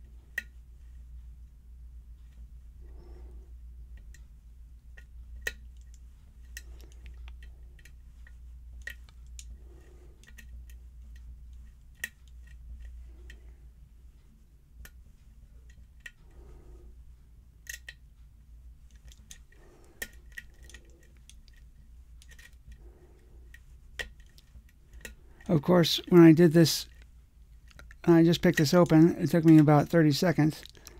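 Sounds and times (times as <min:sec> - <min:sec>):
lock pick clicking and scraping: 0:05.0 - 0:13.4, 0:17.6 - 0:18.0, 0:18.9 - 0:25.4.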